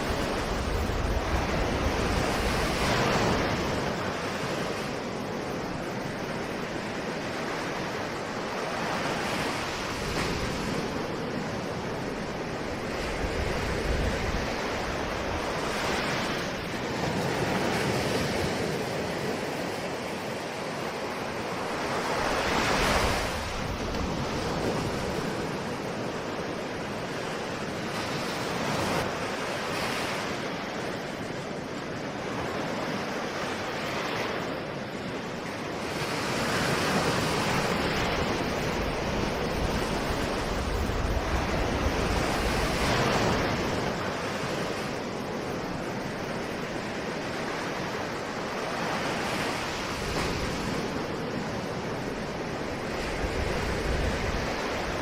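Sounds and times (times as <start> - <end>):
ocean waves breaking on shore: 0.0 - 55.0
wind: 0.0 - 55.0.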